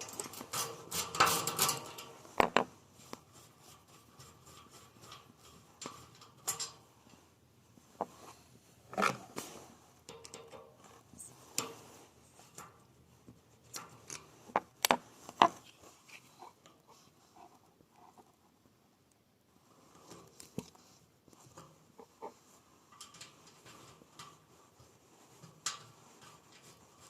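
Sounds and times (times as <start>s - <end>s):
metal tools clicking and knocking: 0.0s - 2.7s, 4.2s - 6.8s, 10.1s - 11.0s.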